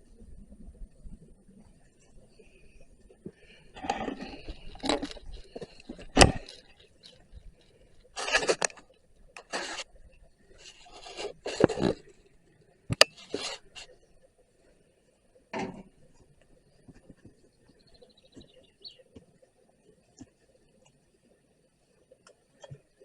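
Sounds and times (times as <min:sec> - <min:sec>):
objects scraping and rustling: 0:03.3 - 0:12.3, 0:12.9 - 0:14.0.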